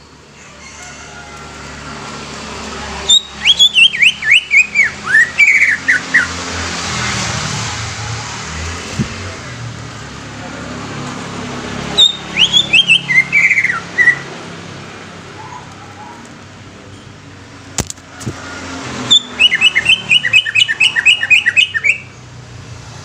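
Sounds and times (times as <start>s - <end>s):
bird singing: 3.1s - 6.4s, 11.9s - 14.3s, 19.1s - 22.2s.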